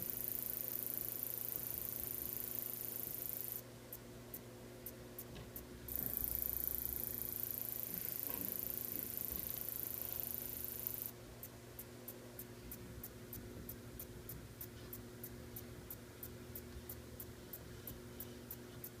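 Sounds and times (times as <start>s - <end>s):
grasshopper stridulating: 0.0s - 3.6s, 5.9s - 11.1s.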